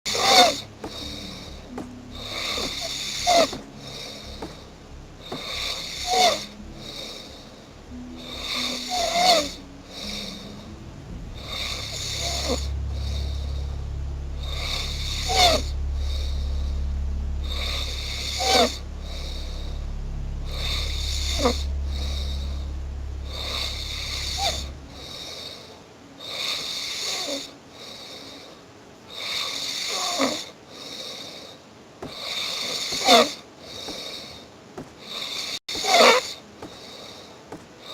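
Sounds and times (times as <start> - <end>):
rhythmic snoring: 0.1 - 37.9
low steady hum: 0.4 - 26.2.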